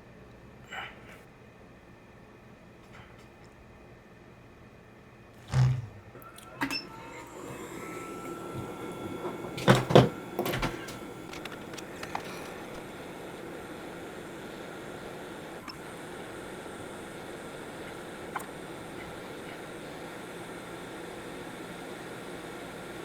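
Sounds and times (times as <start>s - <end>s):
hot air station blowing: 5.4s - 23.0s
handling knocks and clicks: 8.6s - 12.8s.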